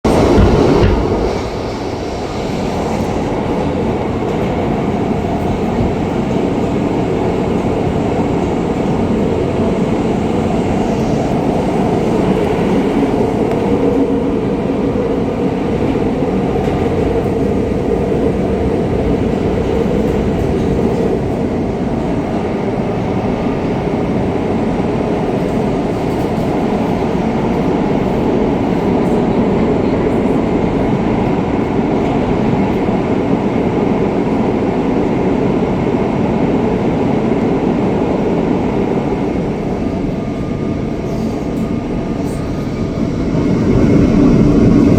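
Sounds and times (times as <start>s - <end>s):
train wheels rumbling on rail: 0.0s - 44.9s.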